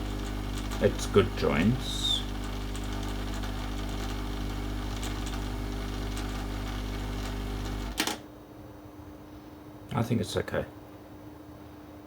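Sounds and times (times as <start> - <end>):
heat gun fan humming: 0.0 - 8.3.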